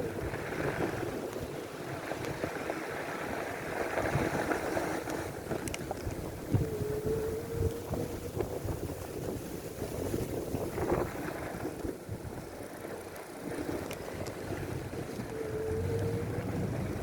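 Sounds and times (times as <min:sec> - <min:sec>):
wind buffeting microphone: 0:00.0 - 0:17.0
steady low rumble: 0:13.8 - 0:17.0.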